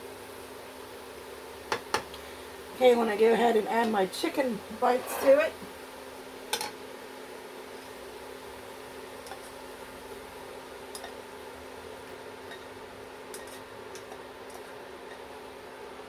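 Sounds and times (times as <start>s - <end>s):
steady hum: 0.0s - 16.0s
clicks and clinks in frying pan: 6.5s - 6.8s, 10.9s - 11.2s.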